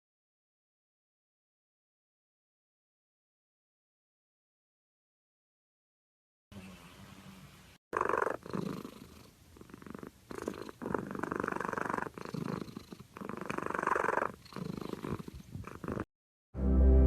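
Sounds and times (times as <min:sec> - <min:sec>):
cat snoring: 0:08.0 - 0:16.1.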